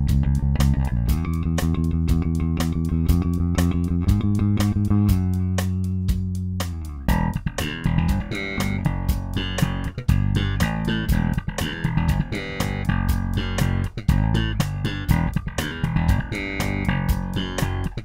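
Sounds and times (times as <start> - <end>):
electric bass playing: 0.0 - 18.0.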